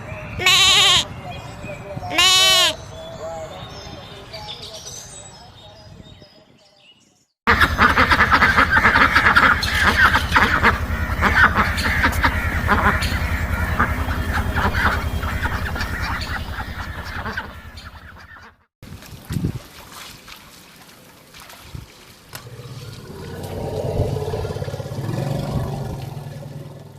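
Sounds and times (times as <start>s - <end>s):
flock of birds calling: 7.5s - 18.6s.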